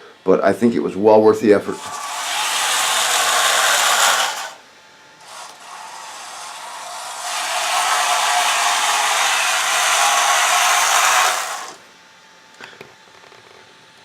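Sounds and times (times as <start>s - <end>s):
electric motor gearbox whirring: 1.7s - 4.6s, 5.2s - 11.8s.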